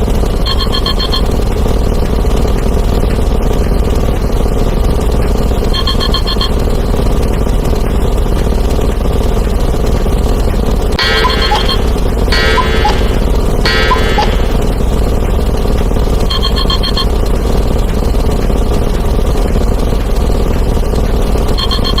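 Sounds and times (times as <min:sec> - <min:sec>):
phone ringtone: 0:11.0 - 0:14.8
stacked sound effects rumble: 0:11.0 - 0:17.0.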